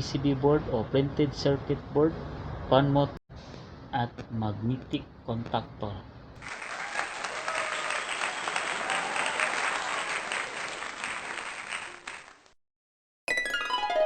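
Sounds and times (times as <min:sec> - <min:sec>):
crowd applauding: 0:06.4 - 0:12.6.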